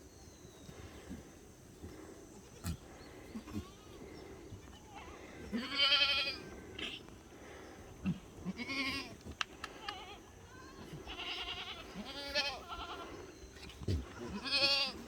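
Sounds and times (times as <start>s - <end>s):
goats bleating: 4.9s - 7.0s, 8.1s - 10.2s, 10.8s - 15.0s.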